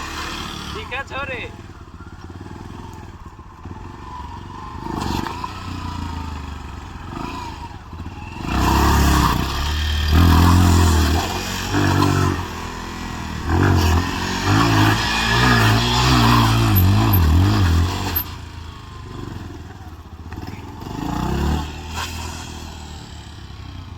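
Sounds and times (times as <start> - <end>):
motorcycle engine revving: 0.0 - 23.9.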